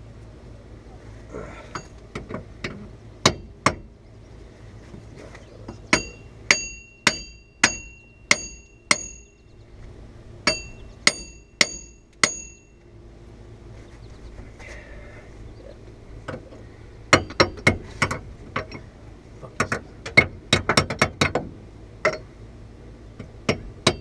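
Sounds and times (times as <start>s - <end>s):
hammer striking metal: 5.9s - 9.3s, 10.4s - 12.8s.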